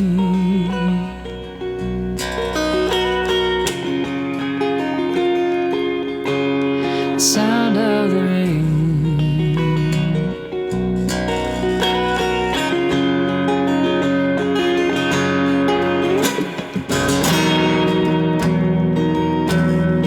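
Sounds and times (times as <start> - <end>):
guitar strumming and picking: 0.0 - 20.0
sustained pitched instruments: 8.4 - 20.0.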